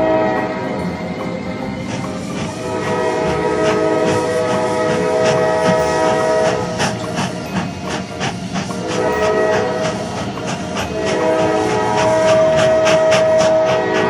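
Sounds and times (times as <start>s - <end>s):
held horn-like chord: 0.0s - 1.0s, 2.5s - 6.8s, 8.8s - 10.2s, 10.8s - 14.0s.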